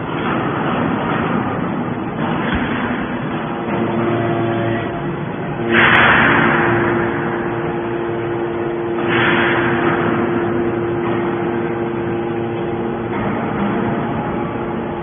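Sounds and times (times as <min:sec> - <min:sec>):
loud rushing noise: 0:00.0 - 0:15.0
baler motor humming: 0:01.0 - 0:15.0.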